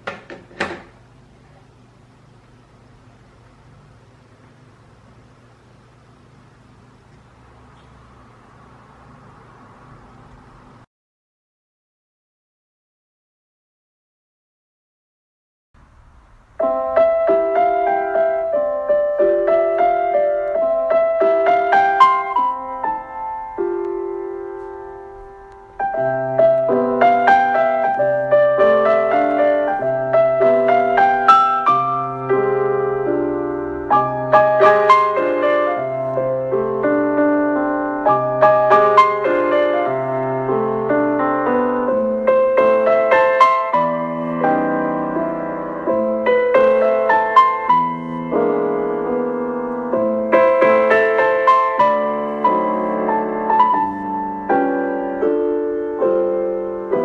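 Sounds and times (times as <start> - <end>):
gentle piano melody: 15.8 - 57.0.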